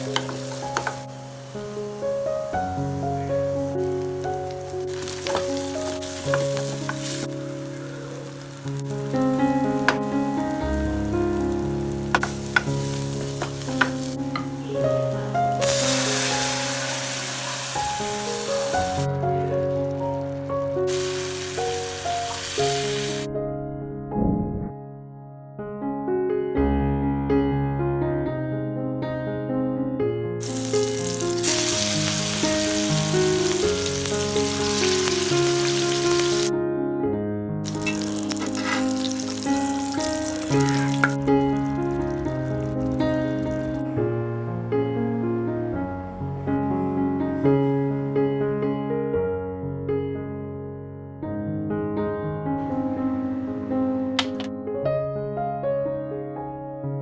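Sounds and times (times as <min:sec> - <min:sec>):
oil popping: 0:00.0 - 0:01.7, 0:03.7 - 0:10.8, 0:11.4 - 0:14.6, 0:37.7 - 0:43.8, 0:54.2 - 0:54.5
food sizzling in a pan: 0:00.0 - 0:23.3, 0:30.4 - 0:36.5, 0:37.6 - 0:43.8, 0:52.7 - 0:54.5
background music: 0:00.0 - 0:24.5, 0:30.4 - 0:36.5, 0:37.6 - 0:48.6.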